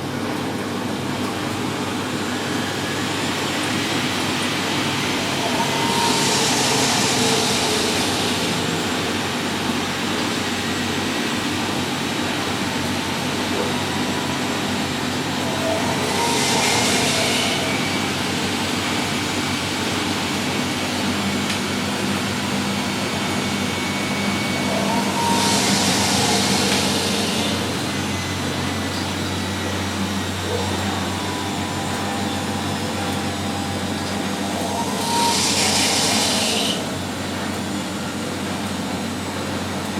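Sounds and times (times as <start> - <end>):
washing machines spinning: 0.0 - 39.9
high hissing swell: 3.0 - 9.9, 15.1 - 19.6, 23.0 - 36.9.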